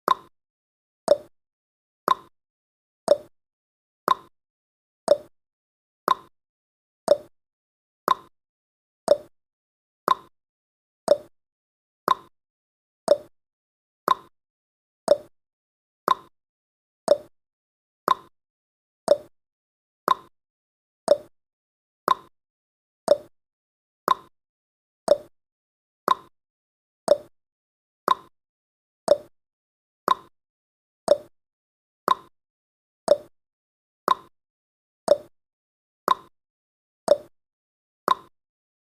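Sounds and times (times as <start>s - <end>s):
timer ticking: 0.1s - 0.3s, 1.1s - 1.3s, 2.1s - 2.3s, 3.1s - 3.3s, 4.1s - 4.3s, 5.1s - 5.3s, 6.1s - 6.3s, 7.1s - 7.3s, 8.1s - 8.3s, 9.1s - 9.3s, 10.1s - 10.3s, 11.1s - 11.3s, 12.1s - 12.3s, 13.1s - 13.3s, 14.1s - 14.3s, 15.1s - 15.3s, 16.1s - 16.3s, 17.1s - 17.3s, 18.1s - 18.3s, 19.1s - 19.3s, 20.1s - 20.3s, 21.1s - 21.3s, 22.1s - 22.3s, 23.1s - 23.3s, 24.1s - 24.3s, 25.1s - 25.3s, 27.1s - 27.3s, 29.1s - 29.3s, 31.1s - 31.3s, 33.1s - 33.3s, 35.1s - 35.3s, 37.1s - 37.3s, 38.1s - 38.3s.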